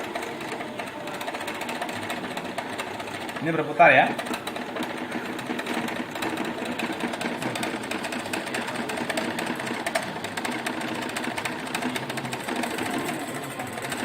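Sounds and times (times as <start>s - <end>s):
fast ticking clatter: 0.0s - 14.0s.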